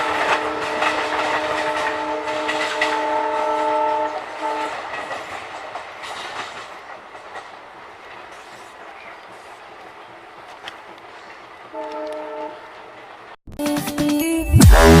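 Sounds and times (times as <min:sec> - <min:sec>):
locomotive air horn honking: 0:00.0 - 0:04.9, 0:11.7 - 0:12.7
train wheels clattering over rails: 0:00.0 - 0:12.1.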